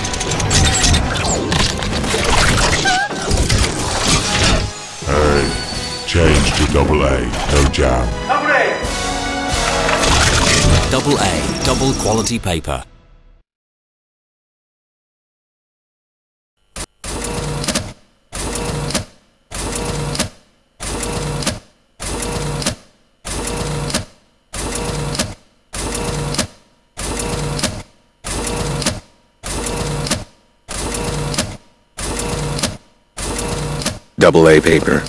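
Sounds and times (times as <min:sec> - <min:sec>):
photocopier whirring and clattering: 0:16.7 - 0:35.0.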